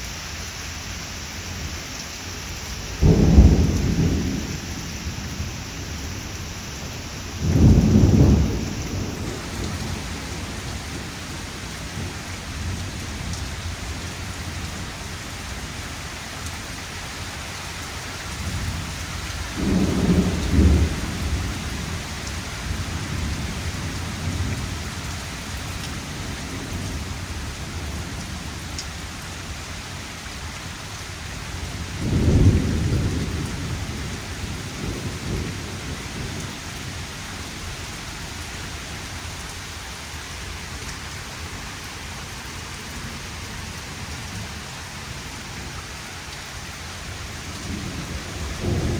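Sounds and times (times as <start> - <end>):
heavy rain: 0.0 - 48.9
low rolls of thunder: 2.9 - 15.9, 18.3 - 29.2, 31.7 - 38.4, 46.6 - 48.9.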